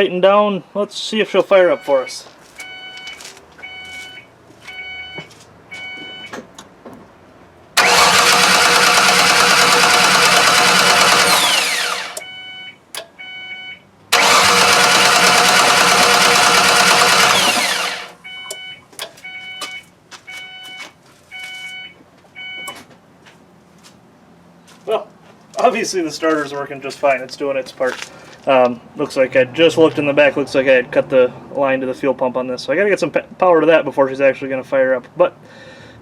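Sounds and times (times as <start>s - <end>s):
starter cranking engine: 7.8s - 12.3s, 14.1s - 18.2s
car warning chime dinging: 18.2s - 19.8s.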